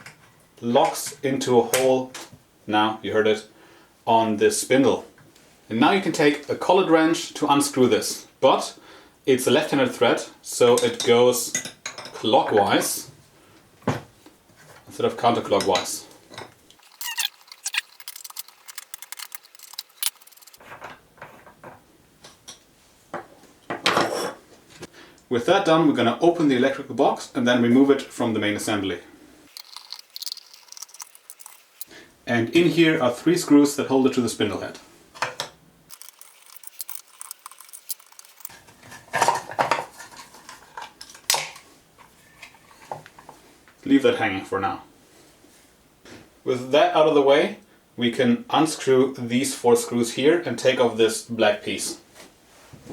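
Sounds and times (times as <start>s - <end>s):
metal tools clinking on metal: 35.9s - 38.5s.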